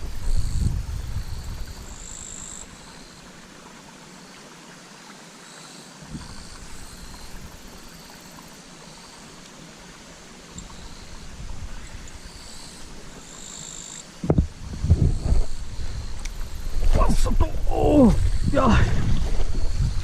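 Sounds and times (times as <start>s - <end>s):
wind buffeting microphone: 0.0s - 3.0s, 10.5s - 13.2s, 14.2s - 20.0s
water flowing into stream: 0.0s - 20.0s.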